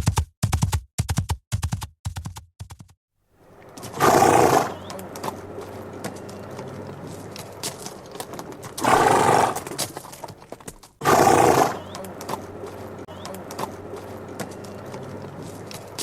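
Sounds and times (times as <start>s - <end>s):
hoof clicks: 3.5s - 16.0s
horse neighing: 3.6s - 10.3s, 11.0s - 12.5s.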